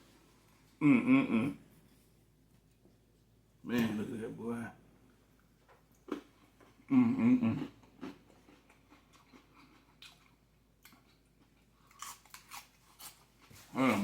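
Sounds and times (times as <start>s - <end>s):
man humming: 0.8s - 1.6s, 6.9s - 7.7s
man chewing food: 5.0s - 14.0s.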